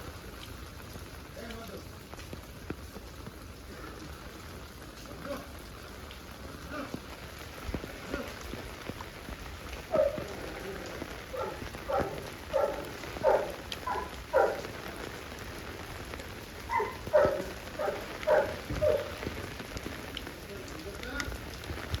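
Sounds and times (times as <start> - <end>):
steady rain falling: 0.0 - 22.0.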